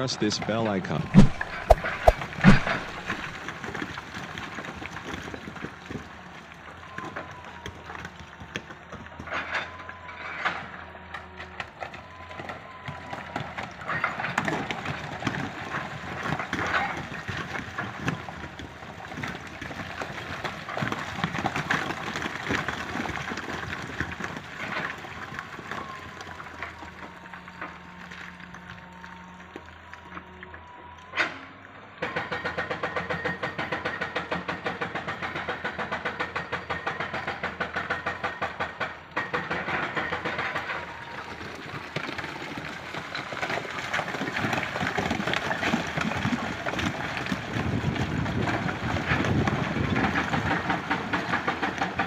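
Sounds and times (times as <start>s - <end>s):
excavator engine with hydraulic whine: 0.0s - 52.0s
digging knocks and clatter: 0.3s - 6.3s, 32.0s - 52.0s.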